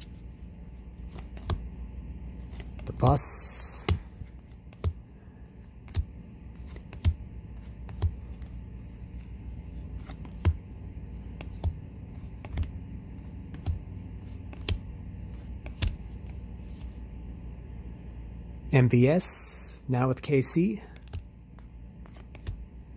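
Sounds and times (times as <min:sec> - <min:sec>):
low steady hum: 0:00.0 - 0:22.9
cards tapping down: 0:01.0 - 0:01.7, 0:02.4 - 0:16.9, 0:20.9 - 0:22.7.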